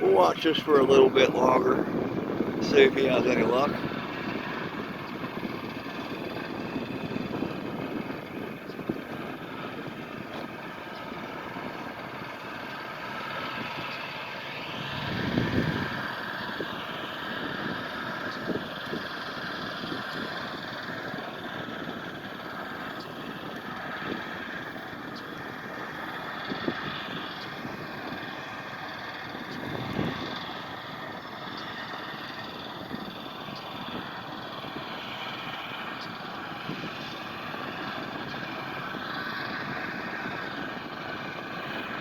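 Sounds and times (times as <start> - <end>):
tugboat engine running: 0.0 - 42.0.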